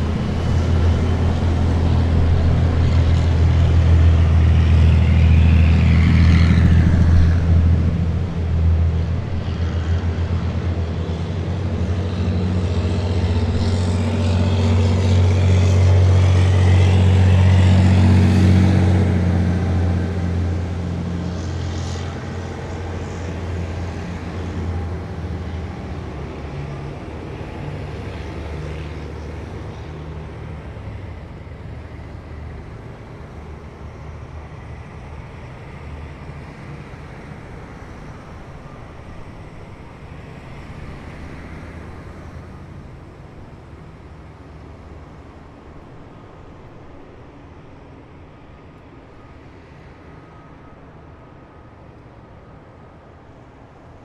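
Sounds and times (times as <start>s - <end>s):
heavy diesel vehicles driving past: 0.0s - 54.0s.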